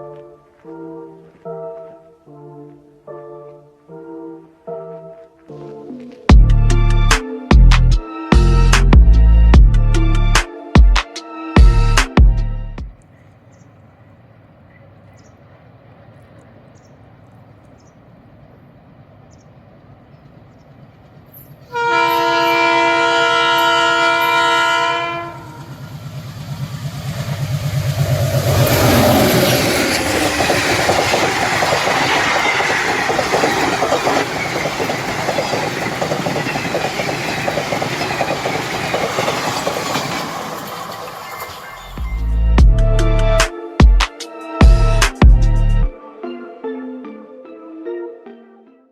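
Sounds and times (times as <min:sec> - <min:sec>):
diesel locomotive engine throbbing: 0:06.3 - 0:10.4, 0:23.4 - 0:40.6, 0:41.8 - 0:43.5, 0:44.6 - 0:45.9
train horn blast: 0:21.7 - 0:25.8
wheels clattering over rail joints: 0:25.7 - 0:41.8.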